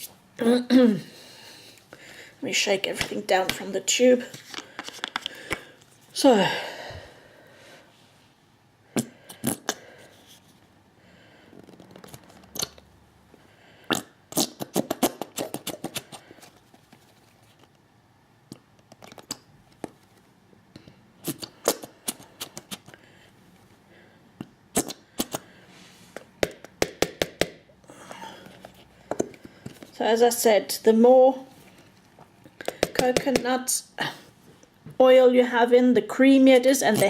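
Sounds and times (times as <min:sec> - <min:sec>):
gel squelching from a tube: 0:13.9 - 0:16.1.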